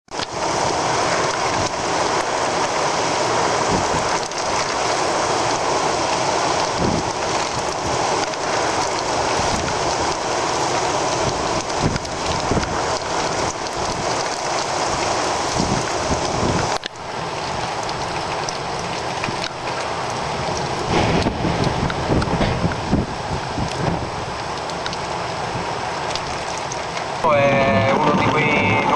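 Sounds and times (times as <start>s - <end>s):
heavy rain pouring: 0.1s - 28.9s.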